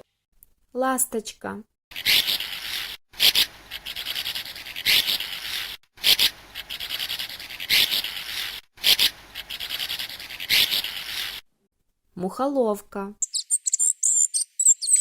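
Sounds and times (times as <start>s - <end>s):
swallow twittering song: 13.2s - 15.0s.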